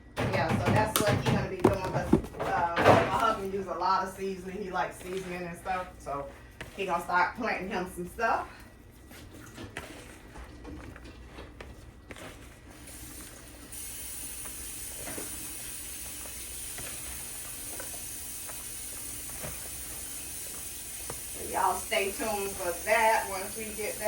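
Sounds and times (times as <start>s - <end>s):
kitchen clicks and taps: 0.2s - 3.4s.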